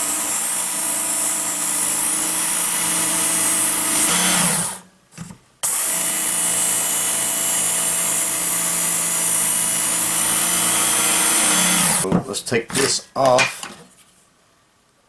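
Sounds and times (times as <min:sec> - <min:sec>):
belt sharpener whirring: 0:00.0 - 0:04.9, 0:05.6 - 0:12.1.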